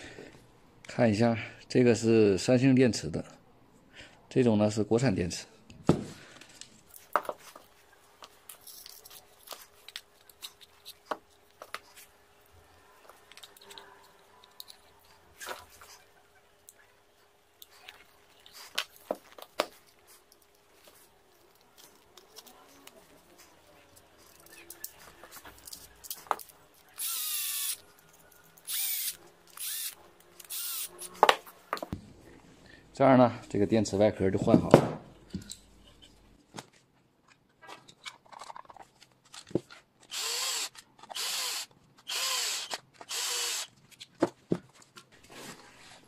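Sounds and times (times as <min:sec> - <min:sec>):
electric screwdriver running: 0:26.9 - 0:27.8, 0:28.6 - 0:31.2, 0:40.1 - 0:43.7.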